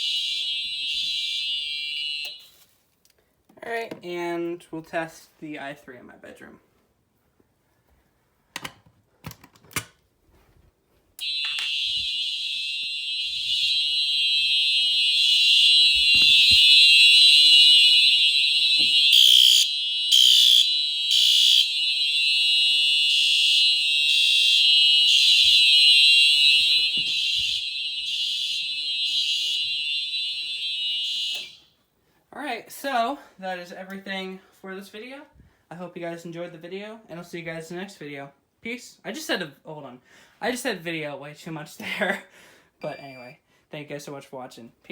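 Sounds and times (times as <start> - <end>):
smoke detector shrill tone: 0.0 - 2.6, 11.2 - 31.7.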